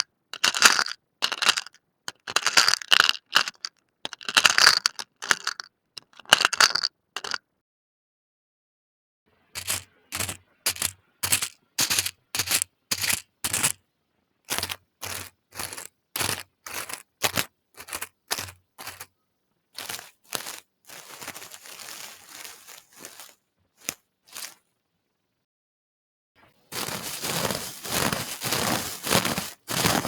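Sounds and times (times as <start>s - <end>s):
crisp crackling crunches: 19.8s - 24.6s, 26.7s - 30.0s.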